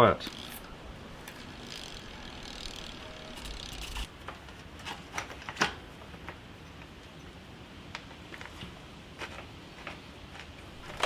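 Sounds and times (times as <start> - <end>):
bicycle freehub ticking: 0.2 - 4.1.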